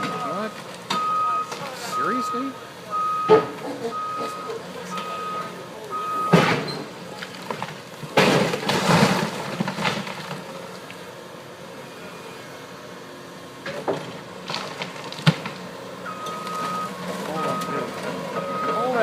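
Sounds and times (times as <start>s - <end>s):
debris clattering: 6.2s - 10.6s
concrete crashing and cracking: 6.4s - 10.6s.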